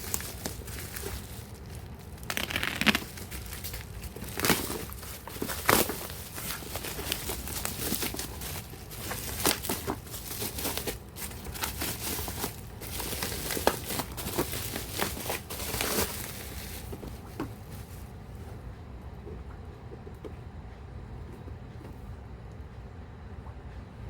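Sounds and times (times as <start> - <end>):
plastic packaging crinkling: 0.0 - 18.1.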